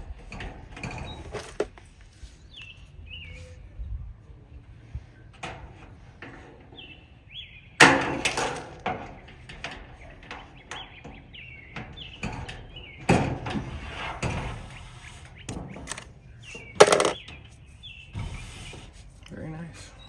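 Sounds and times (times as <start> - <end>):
birds chirping: 0.3 - 3.9, 6.3 - 7.8, 9.0 - 20.0
sharp knocks and handling: 0.4 - 1.9, 15.5 - 17.4.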